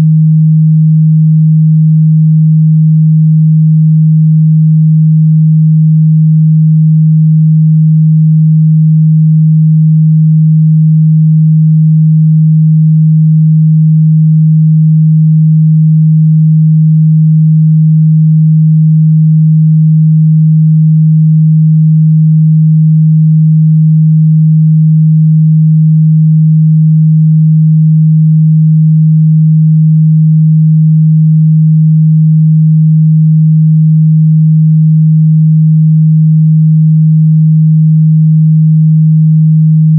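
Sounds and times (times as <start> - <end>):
sine wave test tone: 0.0 - 39.9.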